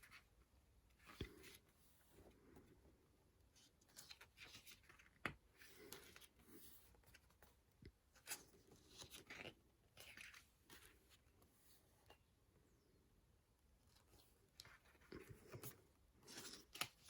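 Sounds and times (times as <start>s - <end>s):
soft clicks of pages turning: 3.4s - 12.2s, 13.8s - 17.0s
paper pages rustling: 8.1s - 11.5s.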